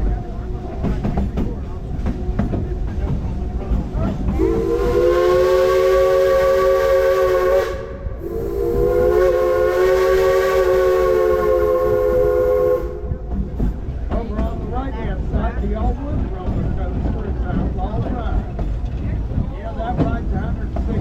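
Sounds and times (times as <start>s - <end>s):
train rumbling: 0.0s - 21.0s
steam locomotive whistle: 4.3s - 13.3s.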